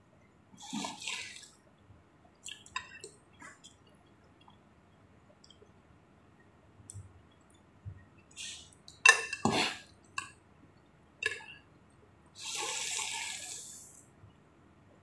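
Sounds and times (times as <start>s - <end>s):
slurping broth: 12.4s - 14.0s.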